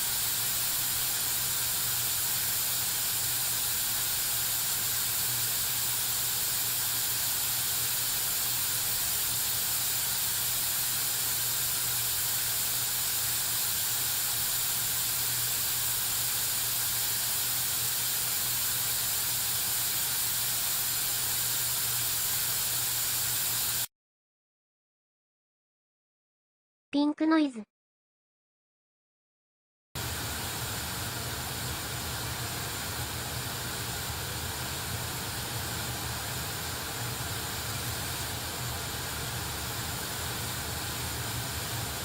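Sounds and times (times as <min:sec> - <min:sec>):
white noise hiss from speaker: 0:00.0 - 0:23.3, 0:30.0 - 0:42.0.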